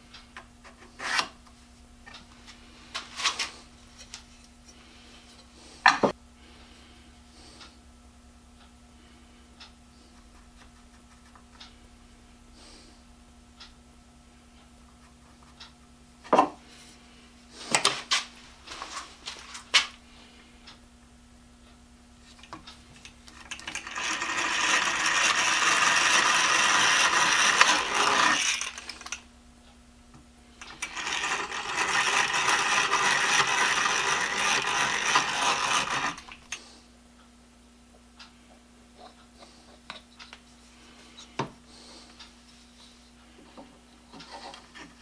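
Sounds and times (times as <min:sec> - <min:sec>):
steady rasping noise: 0:22.6 - 0:29.9, 0:30.6 - 0:36.8.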